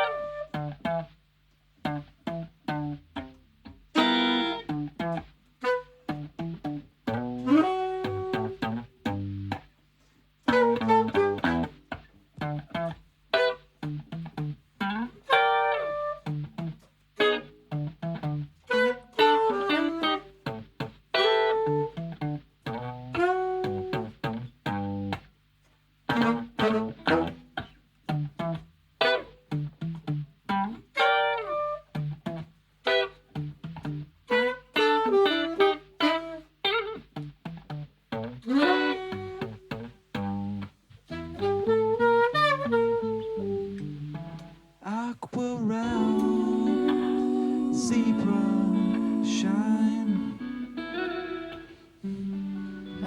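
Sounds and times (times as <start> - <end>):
saxophone melody: 0.0 - 0.8, 3.9 - 8.9, 10.5 - 12.6, 15.2 - 16.4, 18.6 - 20.6, 23.0 - 24.1, 26.1 - 27.6, 34.3 - 37.0, 38.4 - 40.4, 41.0 - 44.8, 45.4 - 53.0
guitar chord stabs: 45.4 - 53.0.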